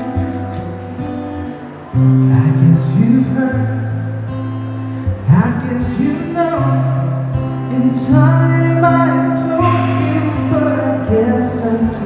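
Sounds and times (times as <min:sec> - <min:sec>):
acoustic guitar strumming: 0:00.0 - 0:12.0
person singing: 0:07.6 - 0:12.0.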